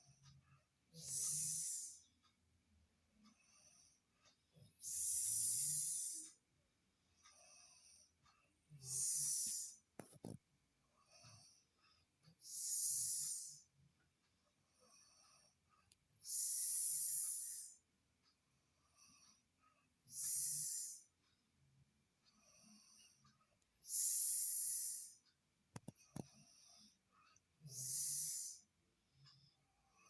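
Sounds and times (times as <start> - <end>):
person snoring: 4.8 - 6.3, 8.8 - 9.8, 12.4 - 13.7, 16.2 - 17.8, 20.1 - 21.1, 23.8 - 25.2, 27.6 - 28.6.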